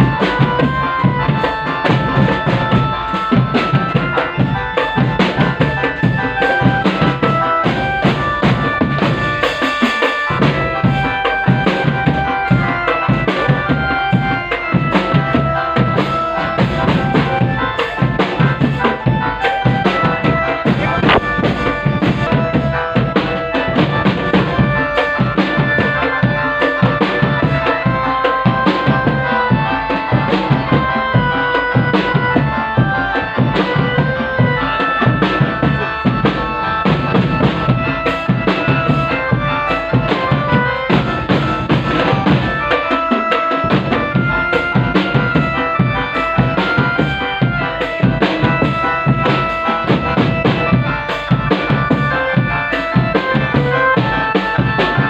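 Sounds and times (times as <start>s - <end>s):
drum band playing: 0.0s - 55.0s
melody of held notes: 0.0s - 55.0s
dense drumming: 10.2s - 42.9s.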